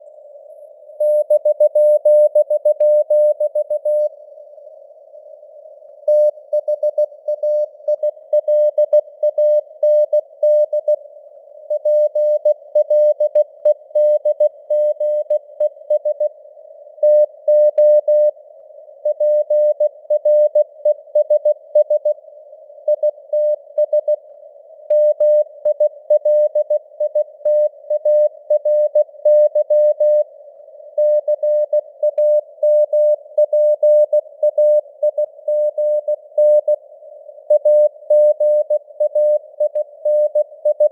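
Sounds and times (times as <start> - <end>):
morse code beeps: 31.0 - 36.8, 37.5 - 40.9.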